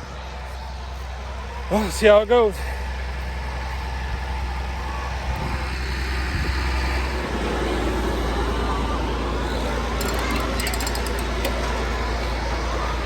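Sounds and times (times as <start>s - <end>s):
tractor engine running: 2.8s - 13.0s
feed grinder grinding rattle: 10.0s - 11.8s.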